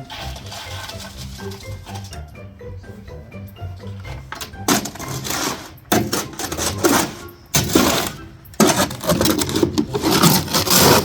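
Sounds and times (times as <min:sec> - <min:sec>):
concrete shovelled and scraped: 0:00.0 - 0:02.2, 0:04.7 - 0:11.0
background music: 0:00.0 - 0:11.0.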